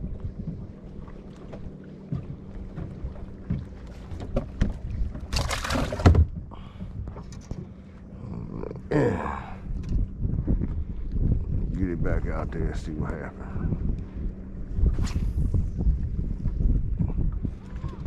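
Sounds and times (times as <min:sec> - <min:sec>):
steady low hum: 0:00.0 - 0:18.0
light knocks and clunks: 0:01.5 - 0:07.8.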